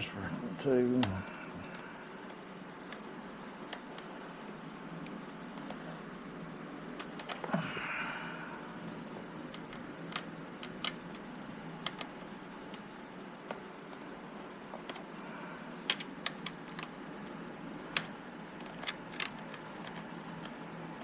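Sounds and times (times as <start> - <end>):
low background hum: 0.0 - 21.0.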